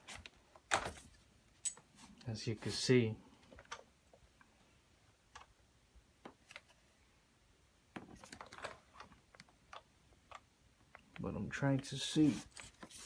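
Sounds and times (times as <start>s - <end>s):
handling clicks and rattles: 8.0s - 11.2s.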